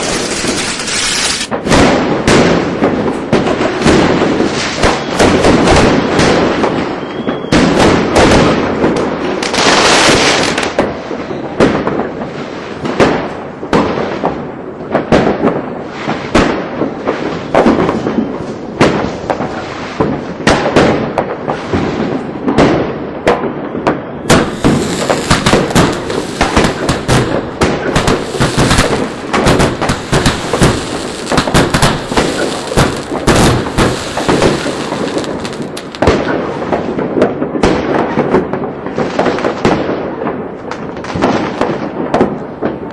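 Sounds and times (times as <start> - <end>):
fireworks hissing burst: 0.0 - 1.6, 24.3 - 36.0
fireworks bangs and crackles: 0.0 - 42.9.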